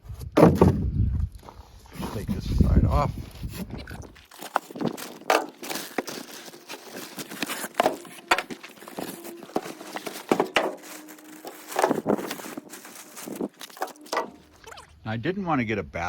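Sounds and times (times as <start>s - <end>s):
packaging rustling and crinkling: 3.2s - 14.9s.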